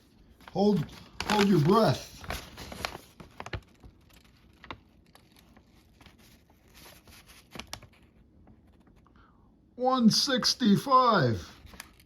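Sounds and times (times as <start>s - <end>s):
faint rustling and crinkling: 0.0s - 9.2s, 11.5s - 12.0s.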